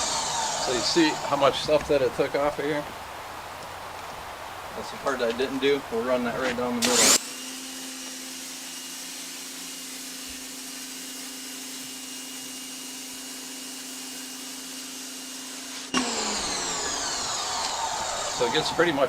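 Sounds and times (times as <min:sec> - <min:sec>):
pressure washer motor hum: 0:00.0 - 0:02.0, 0:06.6 - 0:19.0
water spray hissing on concrete: 0:08.3 - 0:14.9.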